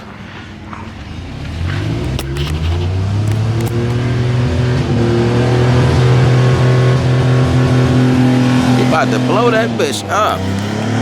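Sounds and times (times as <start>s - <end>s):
vehicle engine revving: 0.0s - 11.0s
short clicks: 2.0s - 4.2s.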